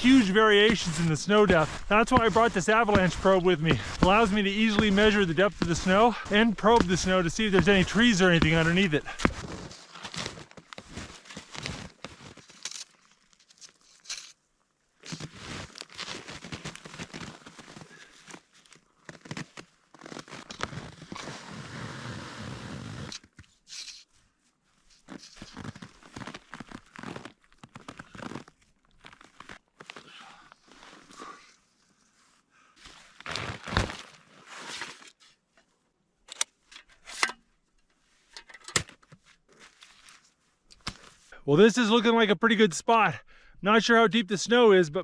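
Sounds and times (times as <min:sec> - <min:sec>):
footsteps crunching in snow: 0:00.0 - 0:12.8, 0:15.1 - 0:18.5, 0:25.0 - 0:29.6.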